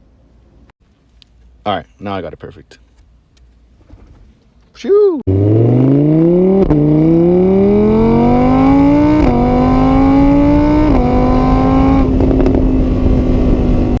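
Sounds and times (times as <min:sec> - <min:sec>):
car engine accelerating through gears: 0:05.3 - 0:14.0.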